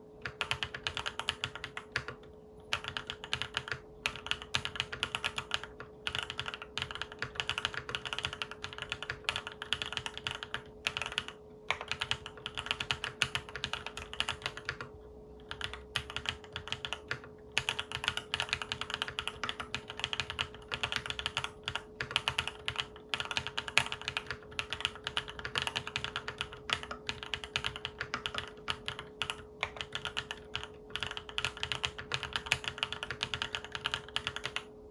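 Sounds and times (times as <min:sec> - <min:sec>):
mechanical keyboard typing: 0:00.2 - 0:34.7.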